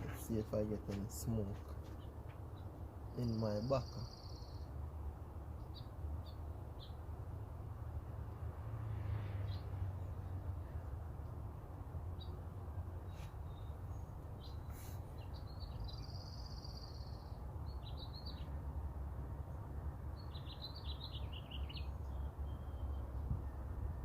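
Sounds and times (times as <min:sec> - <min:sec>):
birds chirping: 0:00.0 - 0:07.1, 0:12.1 - 0:18.7, 0:19.5 - 0:23.7.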